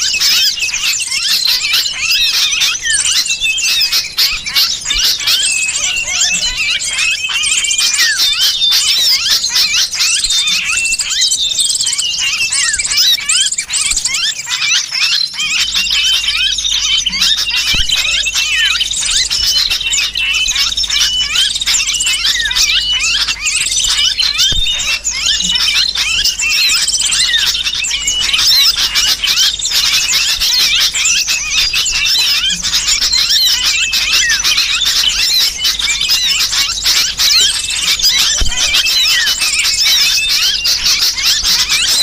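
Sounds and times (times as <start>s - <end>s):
bulbul calls: 0.0s - 42.0s
chorus of small birds chirping: 0.0s - 42.0s
shrill bird distress calls: 0.0s - 42.0s.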